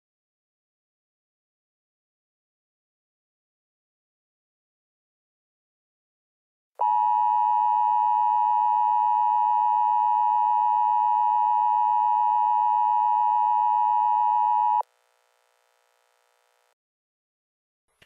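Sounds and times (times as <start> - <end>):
loud steady alarm tone: 6.8 - 14.8
faint hum: 6.8 - 16.8.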